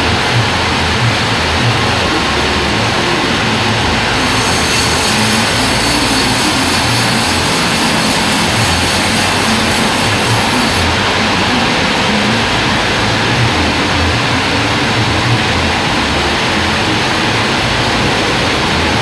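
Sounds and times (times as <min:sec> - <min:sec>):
band sawmill running: 0:03.2 - 0:11.6
high-pitched hiss: 0:04.2 - 0:10.9.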